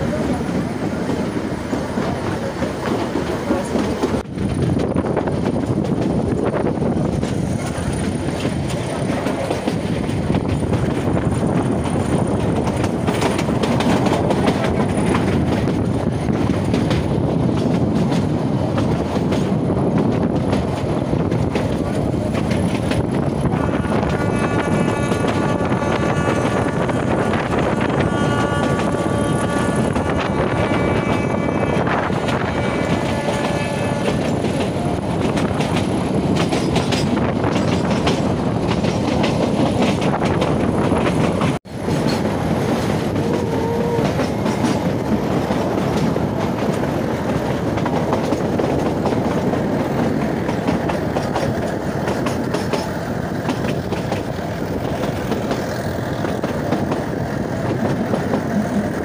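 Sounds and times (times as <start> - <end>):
train horn: 23.5 - 35.0, 43.0 - 44.8.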